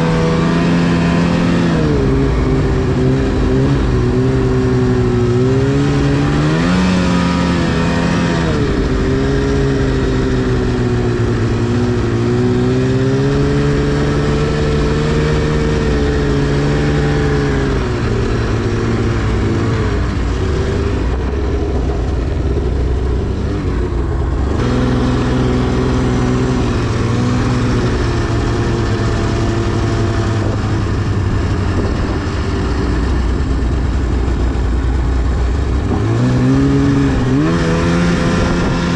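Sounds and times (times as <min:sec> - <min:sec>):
two-stroke engine revving: 0:00.0 - 0:38.9.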